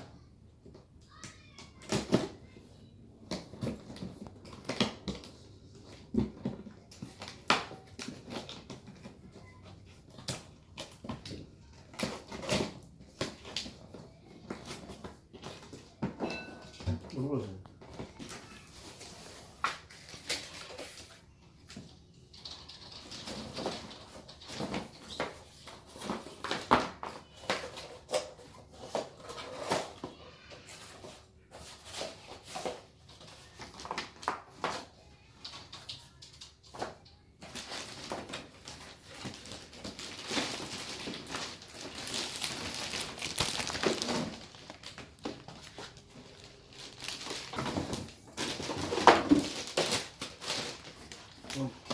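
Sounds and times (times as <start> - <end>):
packaging rustling: 37.4 - 51.9
packaging knocks and clicks: 37.5 - 51.9.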